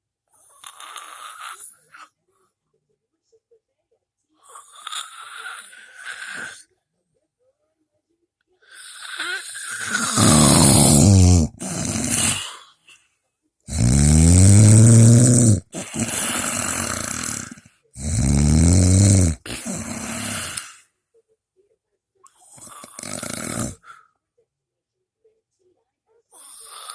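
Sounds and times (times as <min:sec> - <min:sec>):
loud snoring: 0:00.6 - 0:01.8, 0:04.5 - 0:06.6, 0:08.7 - 0:12.7, 0:13.7 - 0:20.8, 0:22.4 - 0:23.9, 0:26.4 - 0:26.9
quiet breath: 0:08.5 - 0:13.9, 0:19.2 - 0:21.2, 0:22.3 - 0:24.5.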